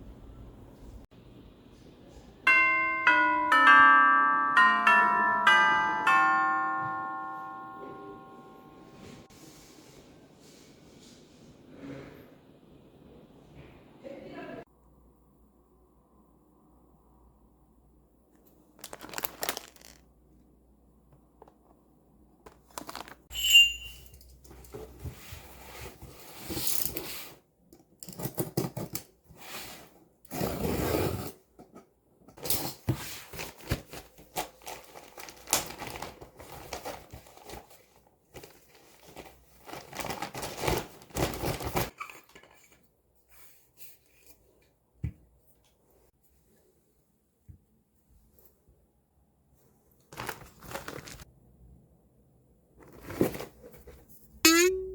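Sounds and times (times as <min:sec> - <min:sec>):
packaging crinkling and tearing: 0:18.8 - 0:20.1, 0:22.6 - 0:23.2, 0:33.7 - 0:37.8, 0:38.4 - 0:41.9, 0:50.1 - 0:51.2
sharp clink: 0:23.3 - 0:24.3, 0:54.5 - 0:54.9.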